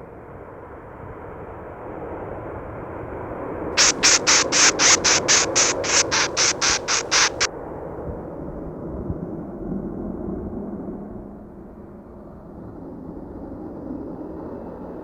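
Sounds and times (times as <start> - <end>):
sharp hissing rattle pulses: 3.8 - 7.5.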